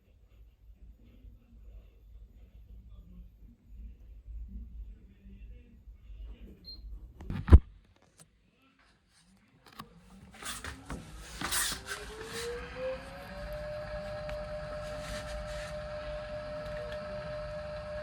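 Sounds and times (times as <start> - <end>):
washing machine motor whine: 11.0 - 18.0.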